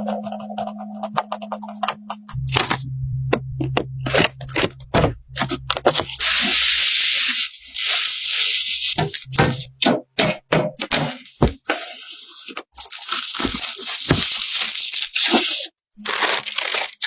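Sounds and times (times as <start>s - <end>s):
loud rough hissing: 6.1s - 9.2s.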